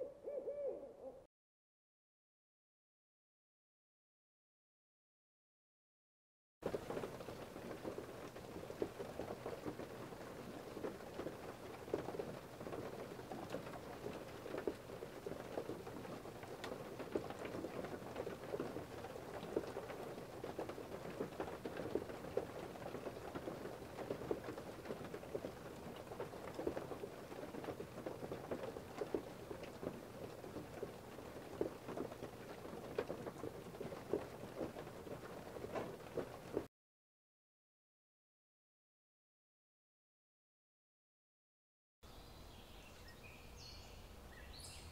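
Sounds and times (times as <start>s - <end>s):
steady rain falling: 6.6s - 36.7s, 42.1s - 44.9s.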